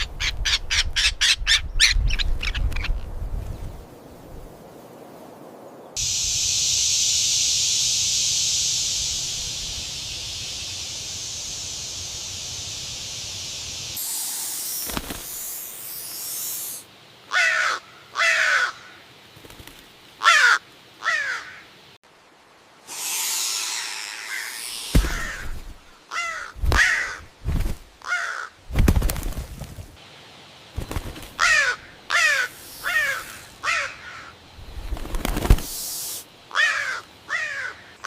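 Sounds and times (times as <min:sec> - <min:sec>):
steady high hiss: 0:03.5 - 0:38.0
bird harsh downward calls: 0:22.9 - 0:25.5.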